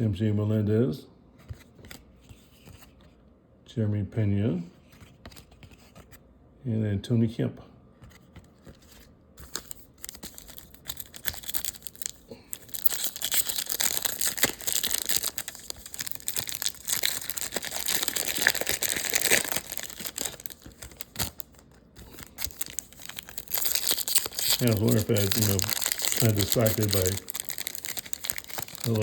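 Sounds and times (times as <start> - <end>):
foil wrapper crinkling and tearing: 9.4 - 29.0.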